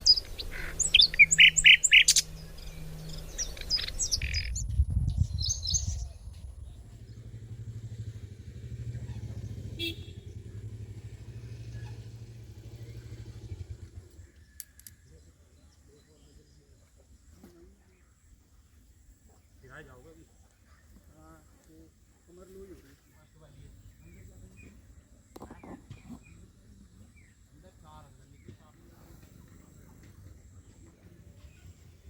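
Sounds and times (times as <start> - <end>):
low steady rumble: 0.0 - 15.8
birds chirping: 0.0 - 32.0.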